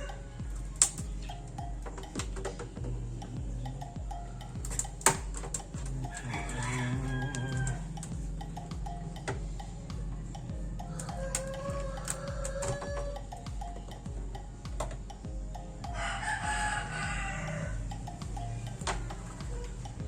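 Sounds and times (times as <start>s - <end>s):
music with a steady beat: 0.0s - 20.0s
rooster-like call: 6.2s - 7.9s, 10.9s - 13.2s, 15.9s - 17.8s.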